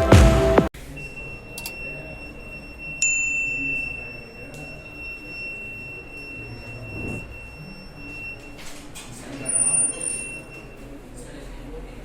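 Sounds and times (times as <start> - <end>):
click: 1.6 - 1.8
short higher beep: 3.6 - 8.6.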